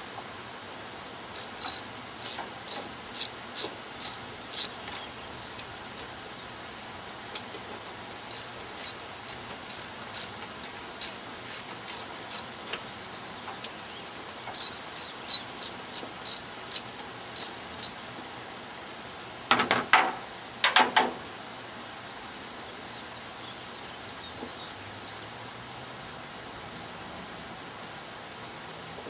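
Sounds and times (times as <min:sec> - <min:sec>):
socket ratchet clicking: 0:01.4 - 0:05.0, 0:08.3 - 0:12.5, 0:14.5 - 0:17.9.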